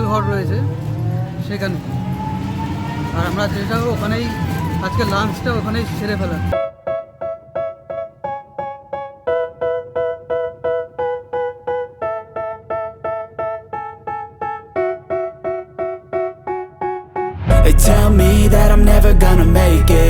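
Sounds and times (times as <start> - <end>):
keyboard repeated chords: 5.8 - 20.0.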